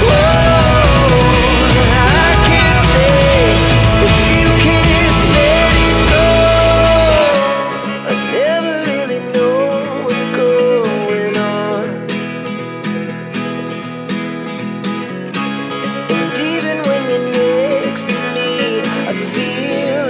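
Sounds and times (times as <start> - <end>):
deep bass: 0.0 - 7.4
gliding melody line: 0.0 - 8.2
guitar: 0.0 - 20.0.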